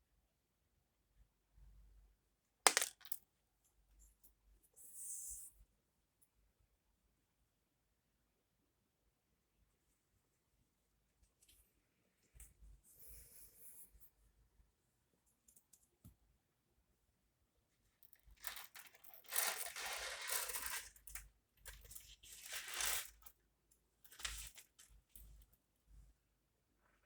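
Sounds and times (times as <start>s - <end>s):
packaging crinkling and rustling: 18.4s - 21.2s.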